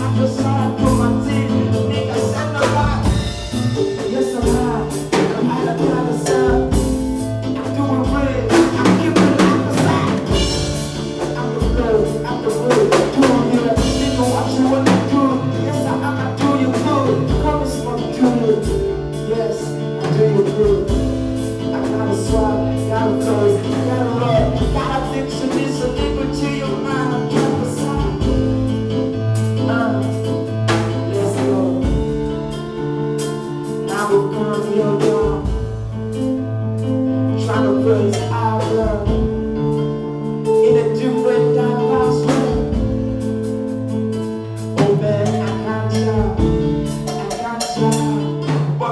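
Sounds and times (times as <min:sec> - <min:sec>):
person singing: 0:00.0 - 0:07.0, 0:07.6 - 0:21.1, 0:21.7 - 0:28.6, 0:40.5 - 0:43.0, 0:44.8 - 0:48.9
drum kit hits: 0:00.0 - 0:48.9
live band playing: 0:00.0 - 0:48.9.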